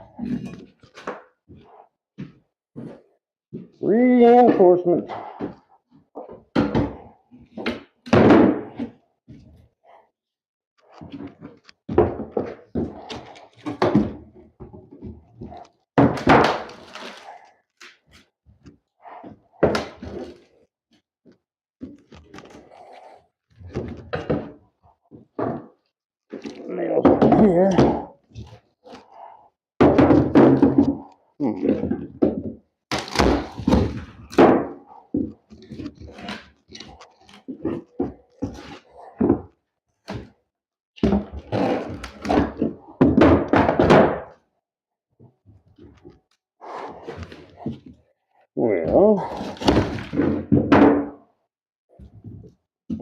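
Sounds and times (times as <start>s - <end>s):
heavy thunks on wooden flooring: 6.5s - 8.9s, 29.8s - 31.1s
plywood cracking crunch: 32.9s - 39.1s.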